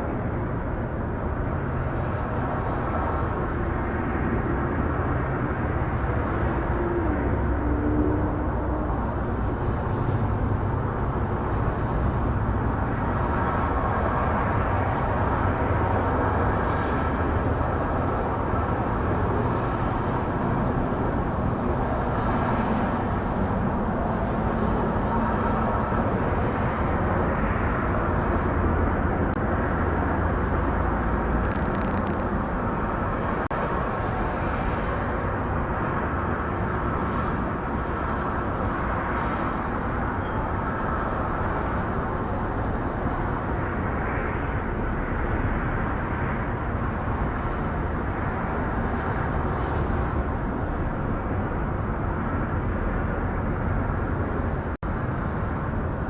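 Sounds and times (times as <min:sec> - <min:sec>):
outdoor rumble and hiss: 0:00.0 - 0:56.0.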